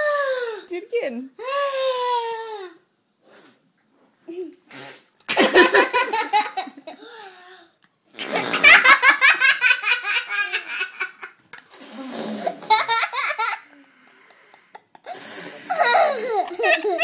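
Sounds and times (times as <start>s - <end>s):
young child laughing: 15.7s - 17.0s.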